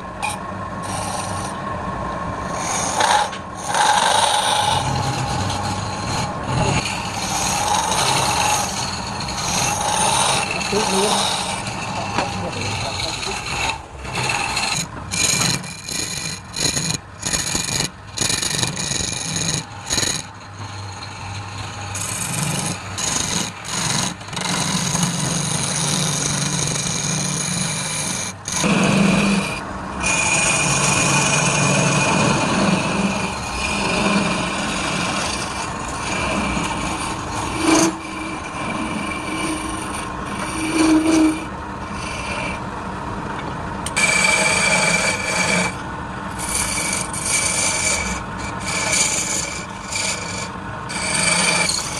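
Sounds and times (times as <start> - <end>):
woodturning tool scraping wood: 0.0 - 1.6, 2.4 - 51.9
lathe whine: 0.0 - 51.9.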